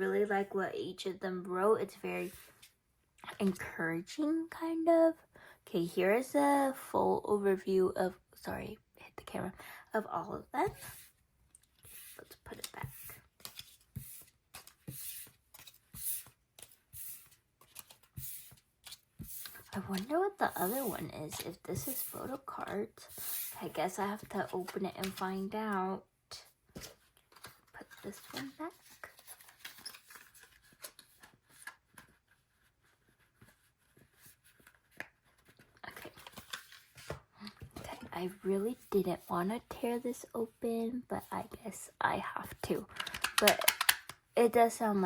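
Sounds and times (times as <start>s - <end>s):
paper cards rustling: 11.9s - 25.6s, 26.7s - 38.0s.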